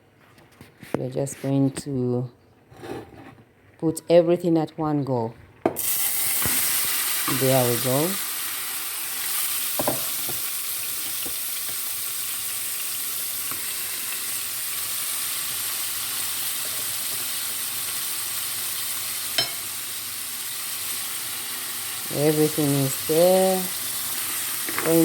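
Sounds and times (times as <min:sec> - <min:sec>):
vegetables sizzling in oil: 0:05.7 - 0:25.0.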